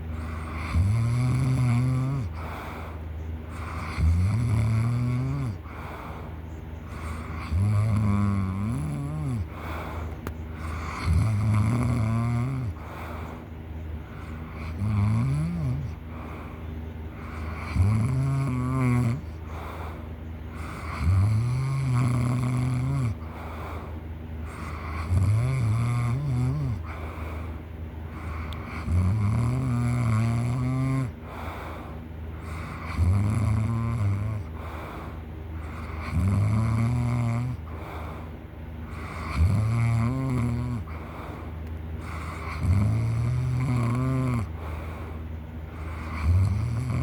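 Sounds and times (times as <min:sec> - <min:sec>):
quiet breathing: 0:00.0 - 0:47.0
person snoring loudly: 0:00.2 - 0:02.5, 0:03.5 - 0:05.8, 0:06.9 - 0:09.7, 0:10.6 - 0:13.0, 0:14.2 - 0:16.4, 0:17.2 - 0:19.5, 0:20.5 - 0:23.2, 0:24.5 - 0:27.0, 0:28.1 - 0:31.2, 0:32.4 - 0:34.5, 0:35.6 - 0:37.8, 0:38.9 - 0:41.1, 0:42.0 - 0:44.6, 0:45.8 - 0:47.0.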